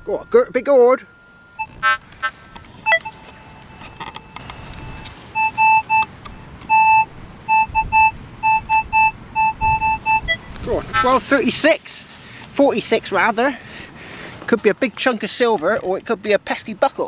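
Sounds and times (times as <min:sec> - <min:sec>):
metal detector short beeps: 0:00.0 - 0:11.2.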